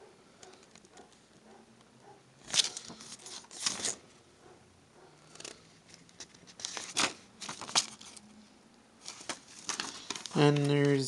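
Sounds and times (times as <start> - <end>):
plastic case and paper rustling: 2.4 - 4.0, 5.3 - 8.2, 9.0 - 11.0.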